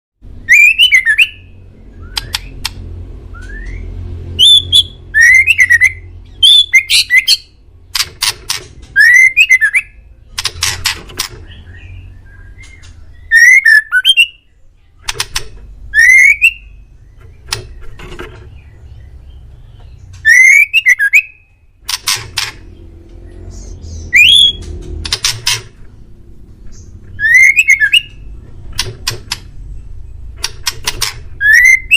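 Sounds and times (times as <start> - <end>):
bird singing whistled phrases: 0.4 - 2.5, 3.3 - 7.5, 9.0 - 10.0, 11.7 - 14.5, 15.9 - 16.8, 20.2 - 21.5, 24.1 - 24.6, 27.1 - 28.2, 31.4 - 31.9.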